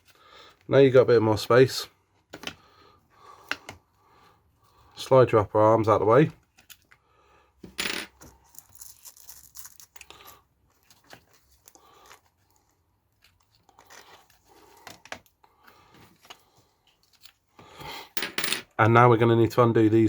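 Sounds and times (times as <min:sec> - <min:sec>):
plastic parts clicking and rattling: 0:06.4 - 0:07.0, 0:08.1 - 0:12.5.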